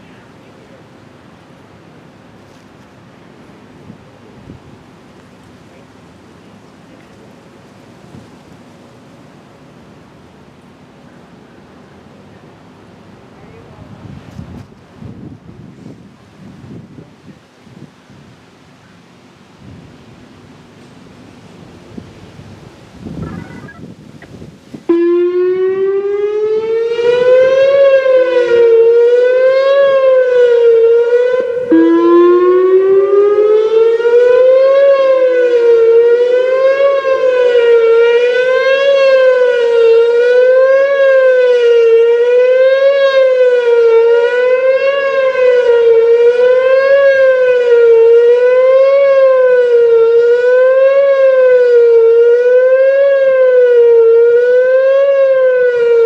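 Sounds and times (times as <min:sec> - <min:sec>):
wavering warning siren: 0:24.9 - 0:56.0.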